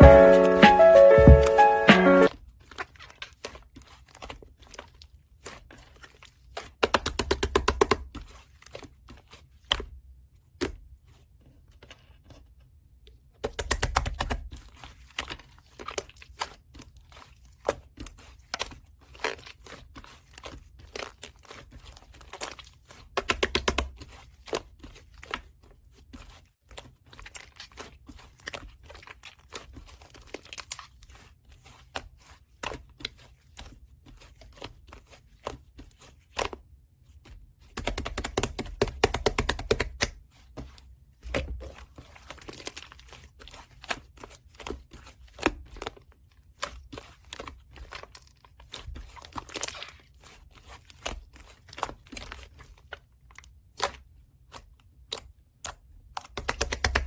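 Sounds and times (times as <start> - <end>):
slime squished crackling and popping: 41.3 - 57.0.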